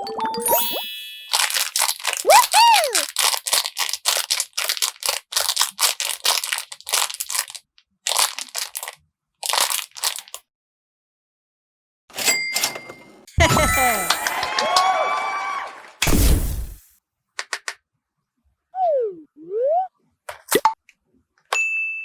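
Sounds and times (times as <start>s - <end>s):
paper crinkling: 1.3s - 10.4s
person shouting woohoo: 2.2s - 3.1s.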